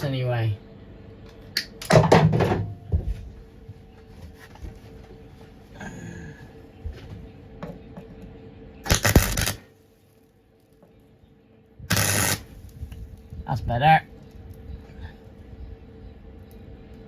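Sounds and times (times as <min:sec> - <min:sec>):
welder crackling burst: 0:08.9 - 0:09.6, 0:11.9 - 0:12.5.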